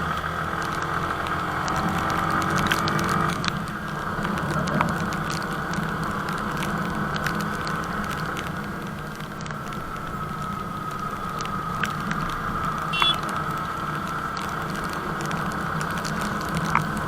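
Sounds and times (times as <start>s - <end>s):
crackling ticks on microphone: 0.0s - 17.0s
motorcycle engine droning: 10.5s - 14.2s.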